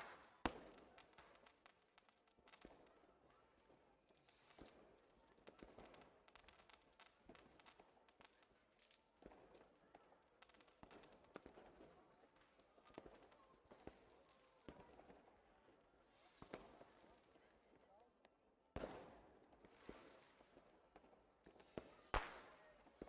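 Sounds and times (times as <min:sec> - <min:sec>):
fireworks popping and crackling: 0:00.0 - 0:03.0, 0:03.6 - 0:09.8, 0:10.4 - 0:14.0, 0:18.2 - 0:23.0.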